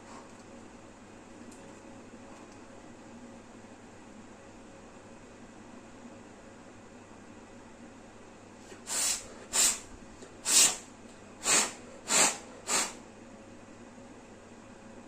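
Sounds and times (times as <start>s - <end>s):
hissing puffs of blown air: 8.8s - 13.0s.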